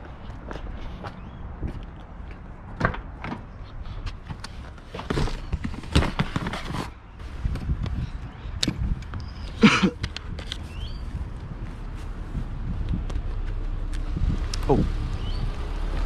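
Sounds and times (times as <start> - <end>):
knocks and clunks: 2.7 - 3.5
steady low rumble: 7.0 - 16.0.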